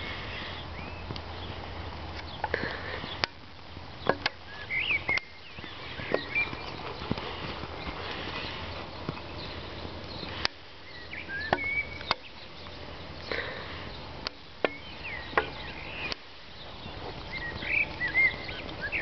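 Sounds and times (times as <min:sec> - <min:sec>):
small birds chirping: 0:00.0 - 0:19.0
horse hooves on hard ground: 0:03.6 - 0:12.9, 0:13.8 - 0:19.0.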